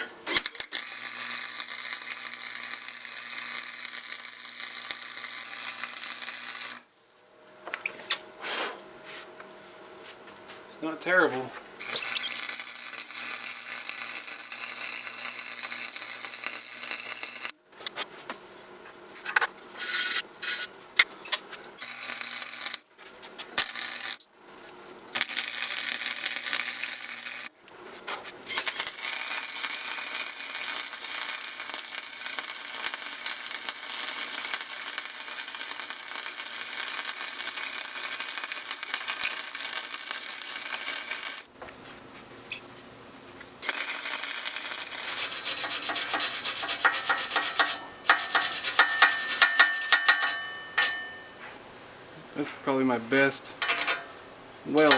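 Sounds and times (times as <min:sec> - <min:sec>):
welding arc crackling: 0:00.3 - 0:07.0, 0:11.8 - 0:17.6, 0:21.8 - 0:24.3, 0:25.1 - 0:27.6, 0:28.5 - 0:41.5, 0:43.6 - 0:51.0.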